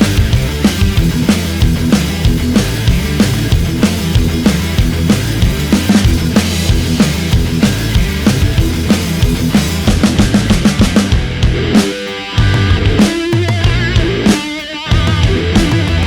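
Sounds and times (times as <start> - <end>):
heavy rock music: 0.0 - 16.0.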